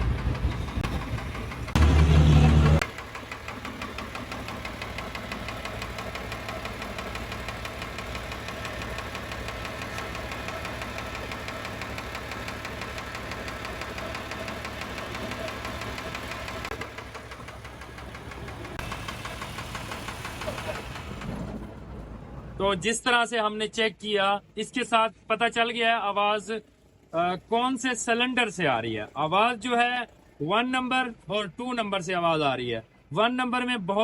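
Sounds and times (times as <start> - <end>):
diesel engine knocking: 0.0 - 22.7
loud burst: 1.7 - 2.9.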